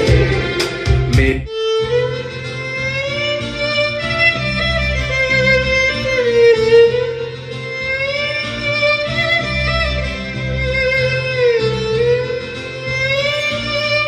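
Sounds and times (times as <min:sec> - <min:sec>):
steady bass line: 0:00.0 - 0:01.5
violin melody: 0:00.0 - 0:14.0.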